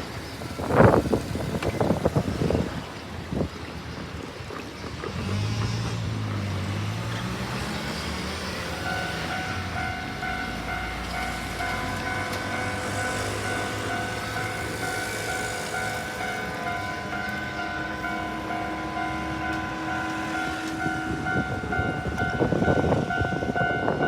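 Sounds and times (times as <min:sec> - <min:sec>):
train clattering over rail joints: 0:00.0 - 0:24.0
level-crossing warning bell: 0:07.6 - 0:24.0.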